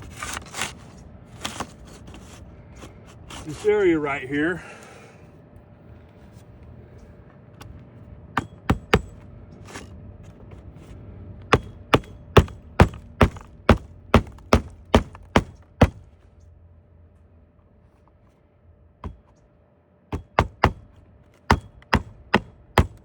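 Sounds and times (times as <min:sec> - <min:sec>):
hammer striking nails: 0:08.4 - 0:09.2, 0:11.5 - 0:16.0, 0:19.0 - 0:19.4, 0:20.1 - 0:23.0.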